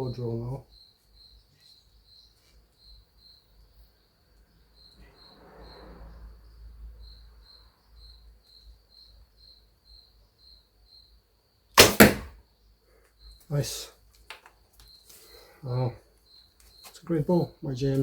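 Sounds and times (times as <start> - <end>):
crickets chirping: 0.0 - 18.0
soft rustle: 1.0 - 2.9.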